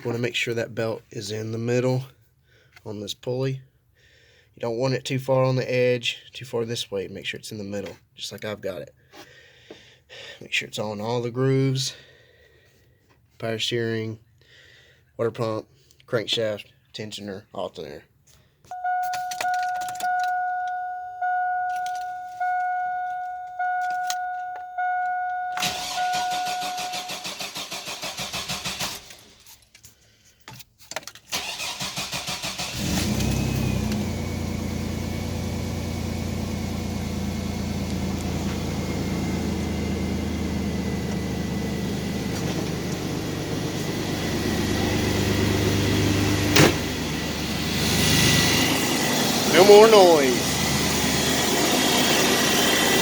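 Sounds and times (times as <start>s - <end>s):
warning chime beeps: 18.7s - 27.2s
starter cranking engine: 25.6s - 29.5s, 31.3s - 37.4s, 40.0s - 53.0s
engine idling: 33.6s - 53.0s.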